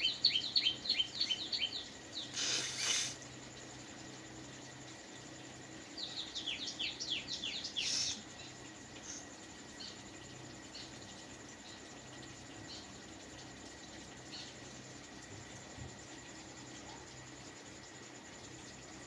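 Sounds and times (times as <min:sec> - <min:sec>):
faint bird chirps: 0:00.0 - 0:03.3, 0:05.9 - 0:10.0
steady low hum: 0:00.0 - 0:19.0
loud burst of hissing: 0:02.2 - 0:03.3.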